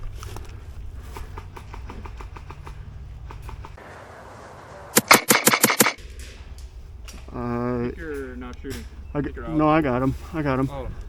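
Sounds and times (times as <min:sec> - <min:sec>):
airsoft rifle shots: 0:05.0 - 0:06.1.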